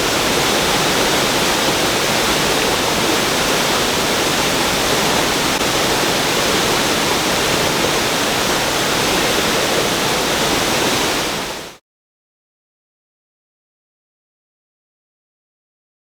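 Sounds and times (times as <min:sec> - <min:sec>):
water rushing over spillway: 0:00.0 - 0:11.8.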